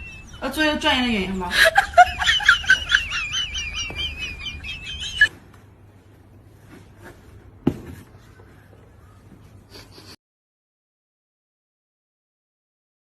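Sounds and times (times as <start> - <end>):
small bird singing a warbling trill: 0.0 - 1.4.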